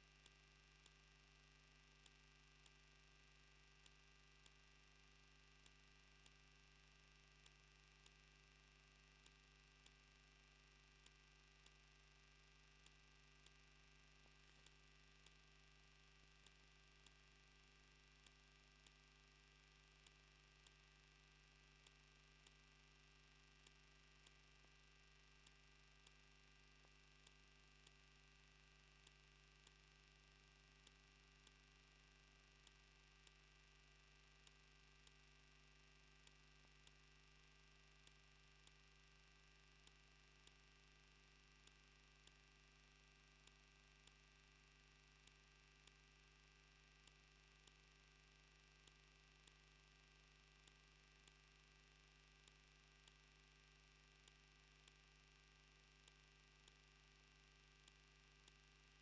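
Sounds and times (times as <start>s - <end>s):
faint electrical hum: 0.0s - 59.0s
faint ticks: 0.0s - 59.0s.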